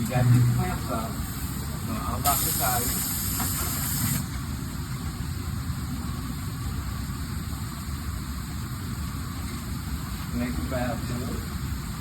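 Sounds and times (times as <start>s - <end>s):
steady low rumble: 0.0s - 2.4s
pneumatic hiss: 1.2s - 4.4s.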